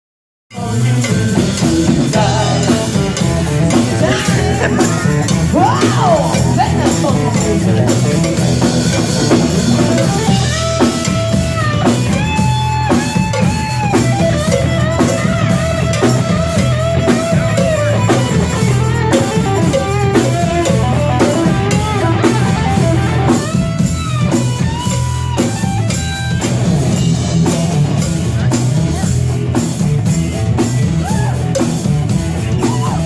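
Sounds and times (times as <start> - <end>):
bass: 0.5 - 33.0
drum kit: 0.5 - 33.0
electric guitar lead notes: 0.6 - 33.0.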